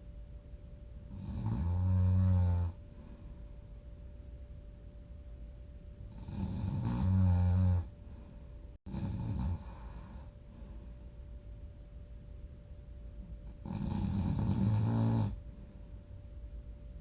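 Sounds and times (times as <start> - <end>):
faint steady hum: 0.0 - 17.0
person snoring: 1.1 - 2.8, 6.1 - 7.9, 8.9 - 10.3, 13.5 - 15.4.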